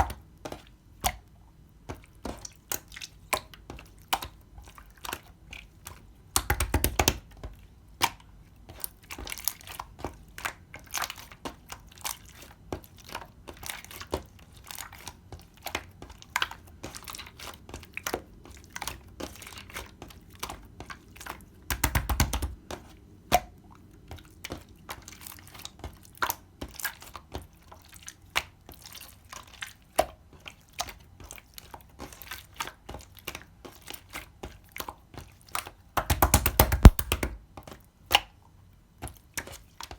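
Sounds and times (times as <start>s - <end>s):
slime squishing: 1.9s - 37.3s
slime popping and crackling: 36.1s - 37.3s.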